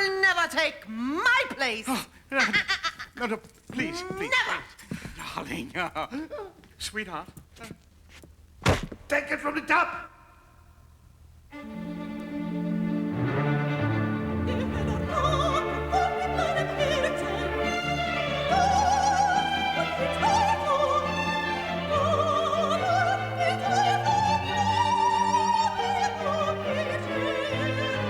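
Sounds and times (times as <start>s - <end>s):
orchestral accompaniment: 11.5s - 28.0s
operatic soprano singing: 13.9s - 28.0s.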